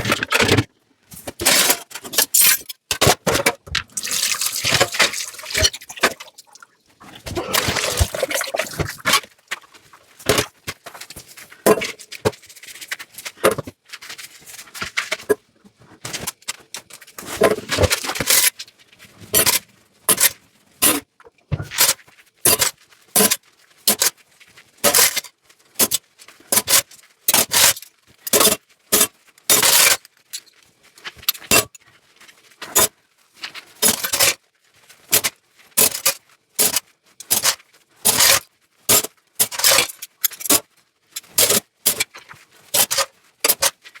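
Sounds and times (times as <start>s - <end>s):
dishes clinking and scraping: 1.3s - 6.4s, 7.0s - 9.6s, 11.6s - 12.2s
running water: 3.9s - 9.1s.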